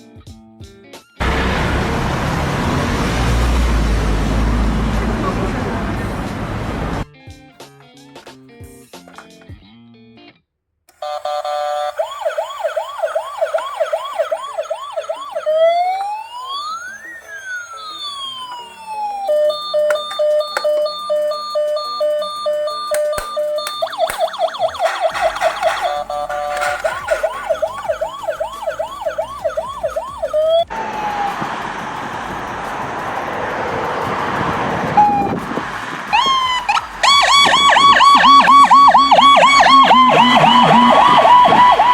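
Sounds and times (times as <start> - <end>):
rushing noise: 1.2 - 7.0, 30.5 - 38.0
toy ambulance siren: 11.0 - 31.4, 34.9 - 35.4, 36.1 - 41.9.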